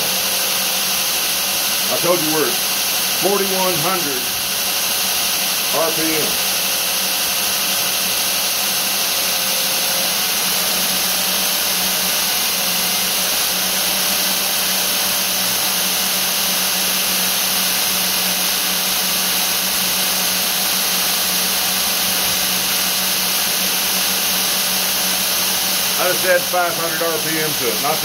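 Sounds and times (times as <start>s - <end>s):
belt grinder running: 0.0s - 28.0s.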